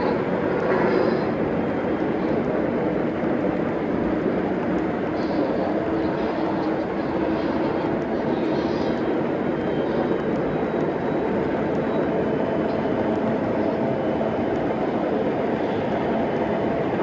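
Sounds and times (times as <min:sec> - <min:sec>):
model train wheels rumbling on track: 0:00.0 - 0:17.0.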